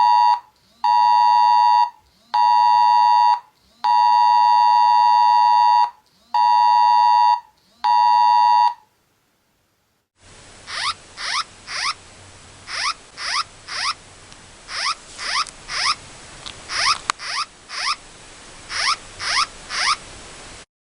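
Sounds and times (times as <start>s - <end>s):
steady hiss: 9.0s - 20.7s
rising electronic chirps: 10.7s - 12.0s, 12.6s - 14.0s, 14.7s - 16.0s, 16.7s - 18.0s, 18.7s - 20.0s.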